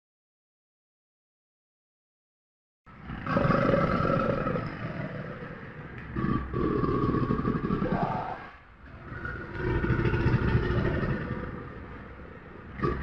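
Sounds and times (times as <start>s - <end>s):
crocodile roaring: 3.0s - 13.0s.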